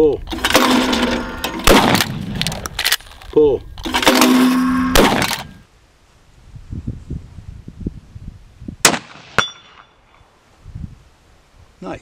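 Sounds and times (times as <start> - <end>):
rifle shot: 0.3 - 3.0, 3.8 - 5.6, 8.8 - 9.9
bullet clanging on steel target: 9.4 - 10.0.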